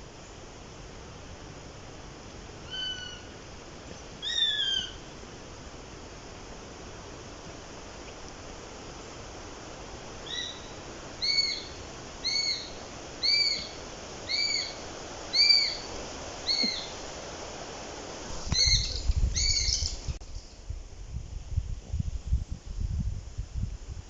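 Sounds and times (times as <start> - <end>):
hawk calling: 4.2 - 5.0, 10.2 - 17.0, 18.5 - 20.0.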